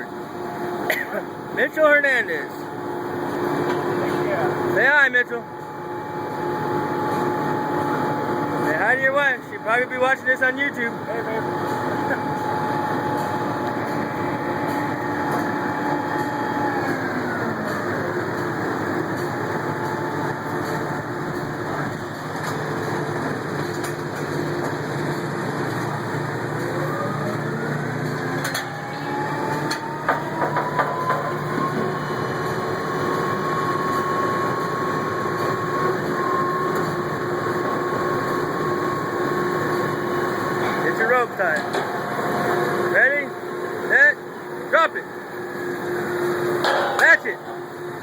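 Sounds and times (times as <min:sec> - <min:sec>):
drilling rig engine running: 0:00.0 - 0:48.0
sharp metal clanks: 0:46.6 - 0:47.6.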